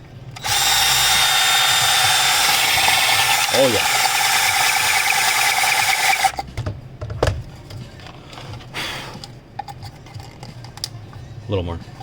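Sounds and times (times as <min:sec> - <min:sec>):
electric drill boring: 0:00.4 - 0:06.4.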